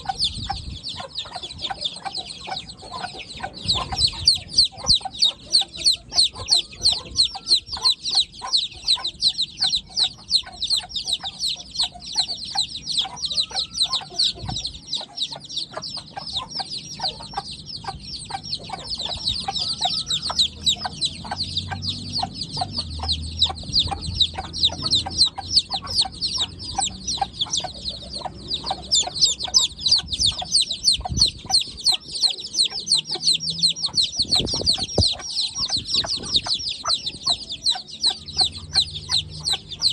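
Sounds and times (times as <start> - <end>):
chicks peeping: 0.0 - 39.9.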